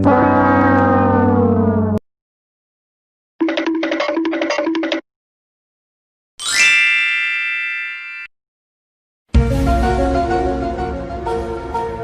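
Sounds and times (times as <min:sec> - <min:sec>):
ringing ding sound effect: 0:06.4 - 0:08.3
music with bass line and melody: 0:09.4 - 0:12.0.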